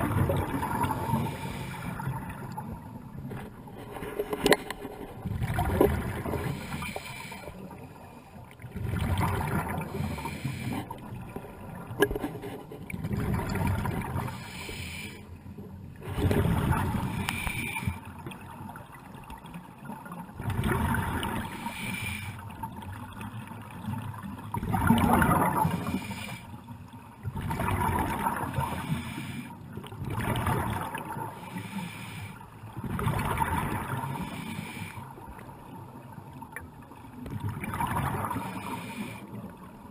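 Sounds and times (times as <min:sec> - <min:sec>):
rumbling bubbles: 0:00.0 - 0:03.6, 0:05.1 - 0:06.8, 0:08.5 - 0:14.4, 0:15.9 - 0:17.3, 0:19.9 - 0:21.6, 0:22.7 - 0:26.0, 0:27.2 - 0:28.8, 0:29.8 - 0:31.4, 0:32.7 - 0:34.3, 0:37.2 - 0:38.6
diver breathing through regulator: 0:00.8 - 0:02.2, 0:06.2 - 0:08.4, 0:09.8 - 0:11.0, 0:14.1 - 0:15.4, 0:16.1 - 0:18.1, 0:21.4 - 0:22.5, 0:25.6 - 0:26.6, 0:28.5 - 0:29.6, 0:31.3 - 0:32.6, 0:34.0 - 0:35.2, 0:38.4 - 0:39.5.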